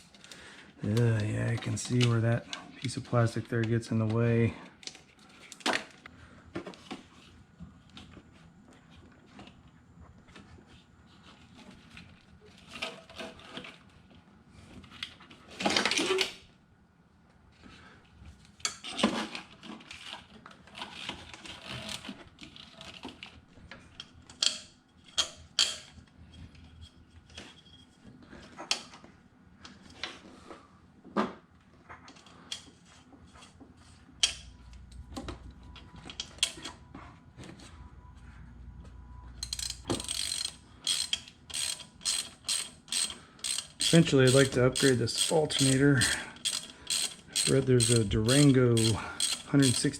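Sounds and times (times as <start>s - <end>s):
cables and hand tools clicking: 39.4s - 49.9s.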